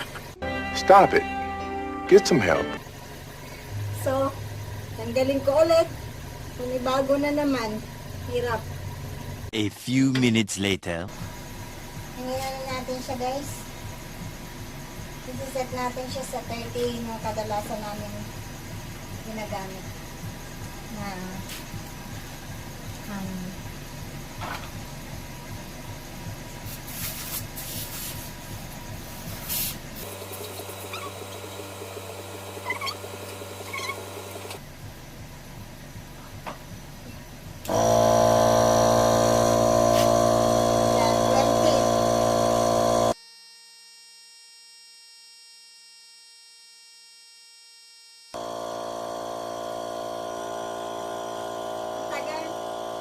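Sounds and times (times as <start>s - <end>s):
compressor humming: 0.0s - 26.8s, 28.3s - 43.2s, 48.4s - 53.0s
short hisses of air: 26.7s - 28.4s, 29.3s - 30.1s.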